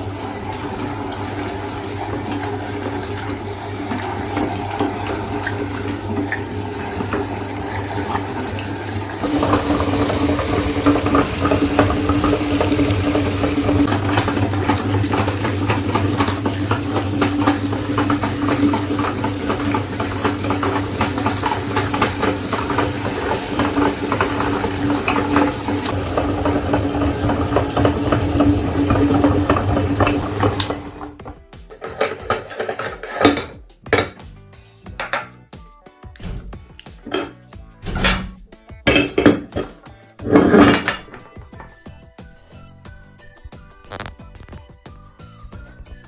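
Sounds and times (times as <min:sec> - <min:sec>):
electric meat grinder running: 0:00.0 - 0:31.4
clinks and knocks: 0:29.0 - 0:34.2, 0:35.0 - 0:35.4, 0:36.2 - 0:41.8.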